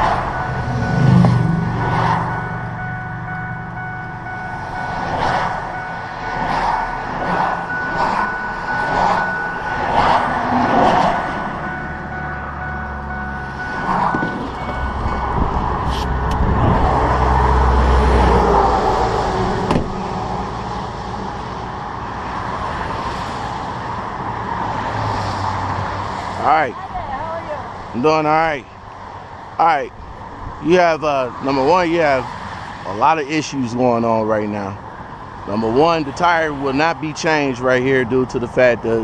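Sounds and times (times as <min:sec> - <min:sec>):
heavy vehicle rumbling past: 0:00.0 - 0:27.9
heavy highway traffic passing: 0:00.0 - 0:39.0.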